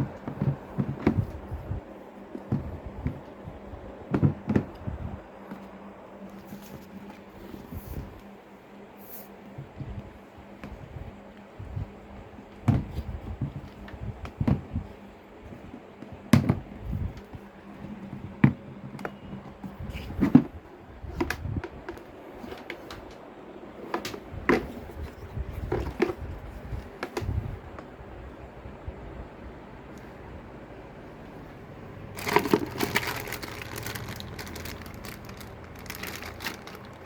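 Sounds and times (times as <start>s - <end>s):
plastic parts knocking and clicking: 32.2s - 37.0s.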